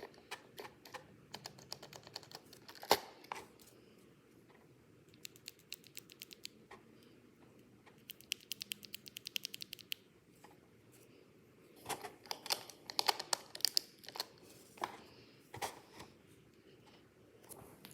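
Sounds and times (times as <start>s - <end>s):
mechanical keyboard typing: 0.6s - 3.0s, 5.1s - 6.6s, 8.0s - 10.0s.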